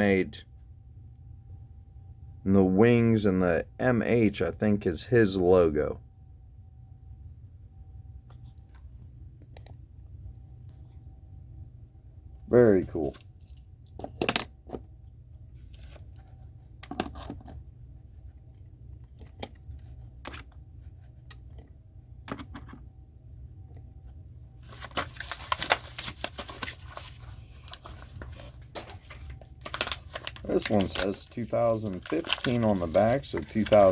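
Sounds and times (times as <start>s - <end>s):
packaging crinkling and tearing: 24.6s - 33.9s.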